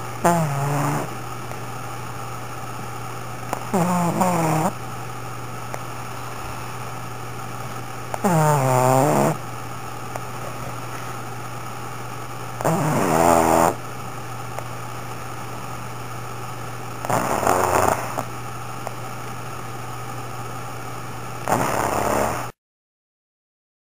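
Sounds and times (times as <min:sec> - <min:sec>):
dog snoring: 0:00.0 - 0:01.2, 0:03.5 - 0:04.8, 0:08.1 - 0:09.4, 0:12.6 - 0:13.8, 0:17.0 - 0:18.3, 0:21.4 - 0:22.6
steady low hum: 0:00.0 - 0:22.6.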